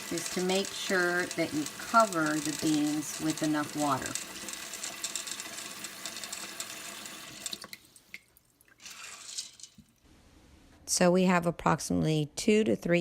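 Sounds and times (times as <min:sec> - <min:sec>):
tap water running into pot: 0:00.0 - 0:10.0
water drips: 0:00.0 - 0:10.0.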